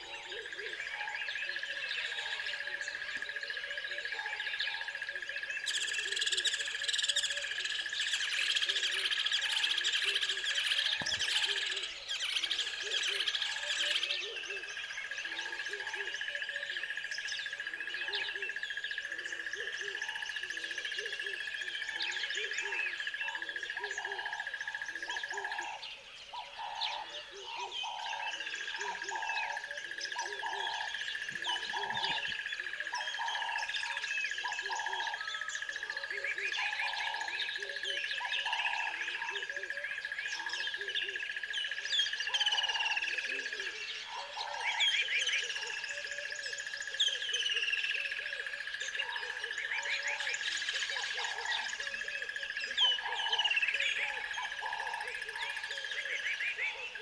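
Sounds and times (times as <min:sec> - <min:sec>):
birds chirping and singing: 0:00.0 - 0:57.0.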